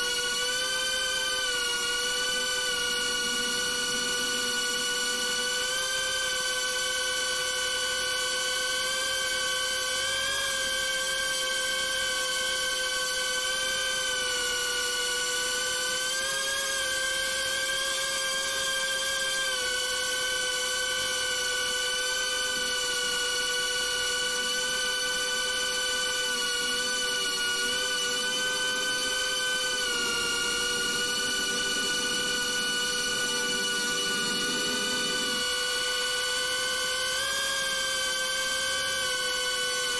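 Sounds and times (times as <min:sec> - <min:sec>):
drone motors whining: 0:00.0 - 0:39.9.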